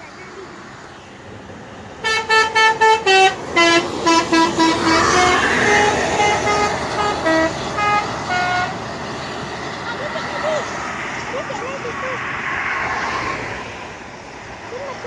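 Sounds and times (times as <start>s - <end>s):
bus engine and road noise: 0.0s - 15.0s
bus air horn tooting tune: 2.0s - 8.8s.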